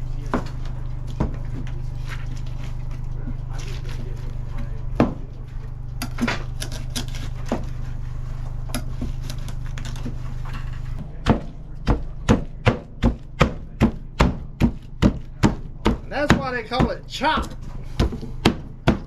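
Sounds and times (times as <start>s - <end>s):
steady low hum: 0.0s - 19.0s
knife chopping meat: 11.0s - 19.0s.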